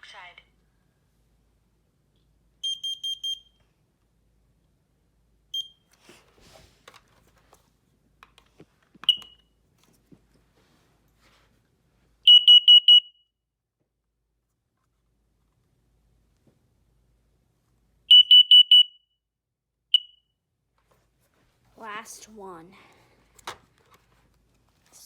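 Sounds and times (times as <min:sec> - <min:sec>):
high piercing alarm beeps: 0:02.6 - 0:03.6, 0:12.3 - 0:13.2, 0:18.1 - 0:19.0, 0:19.9 - 0:20.2.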